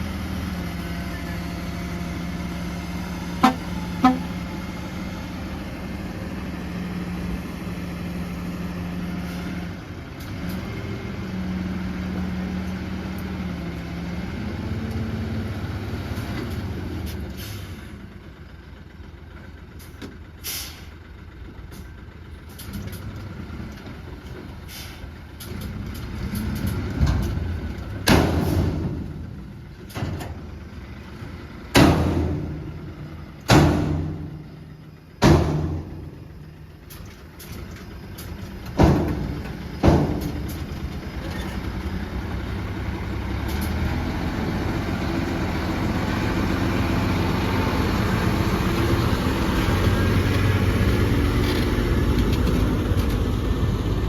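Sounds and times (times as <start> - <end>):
heavy diesel engine running: 0.0 - 54.0
loud thud: 31.8 - 32.8, 33.5 - 34.4, 35.2 - 36.2.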